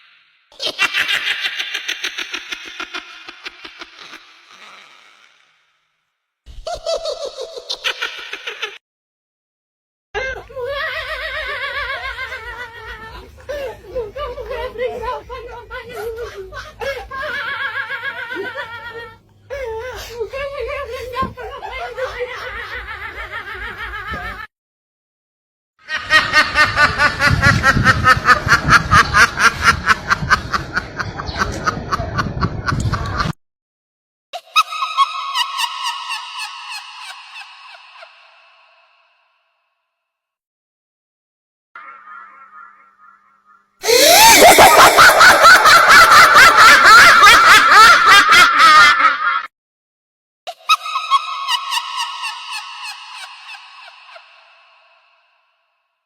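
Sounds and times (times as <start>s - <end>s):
high-pitched snickering laugh: 0.6s - 5.5s, 6.6s - 8.8s, 10.2s - 24.5s, 34.4s - 38.3s, 43.8s - 49.5s.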